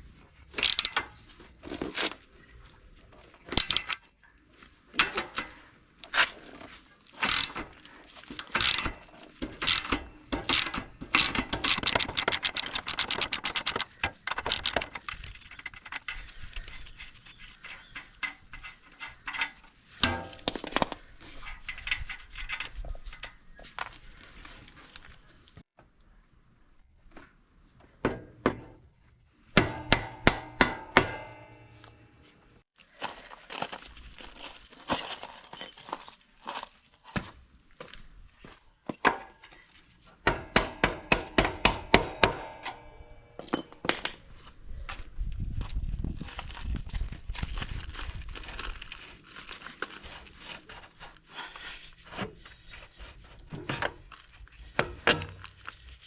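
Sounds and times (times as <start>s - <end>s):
metallic tool clinks and knocks: 17.8s - 22.7s, 29.6s - 32.4s, 40.3s - 44.2s.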